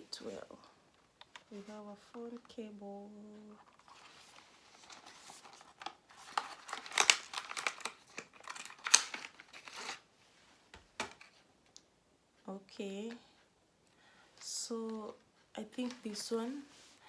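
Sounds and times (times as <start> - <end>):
packaging crinkling and tearing: 3.7 - 10.0.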